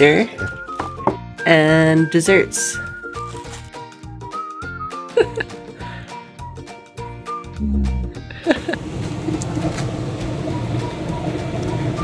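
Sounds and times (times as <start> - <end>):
light melody over bass beat: 2.7 - 8.5.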